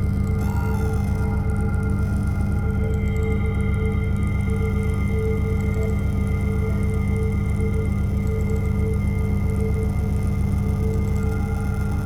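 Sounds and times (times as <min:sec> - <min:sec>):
pulsing low synthesizer drone: 0:00.0 - 0:12.0.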